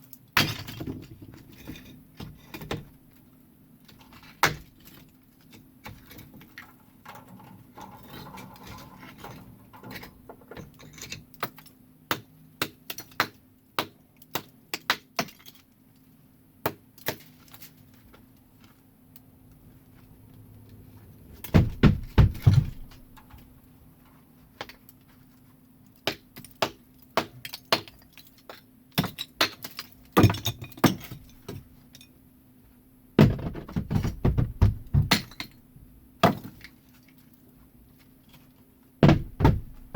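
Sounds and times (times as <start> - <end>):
bricks clinking and knocking: 21.5 - 23.2, 33.2 - 35.6, 39.0 - 39.9
heavy crashing thuds: 21.5 - 23.2, 33.2 - 35.2, 39.0 - 39.9.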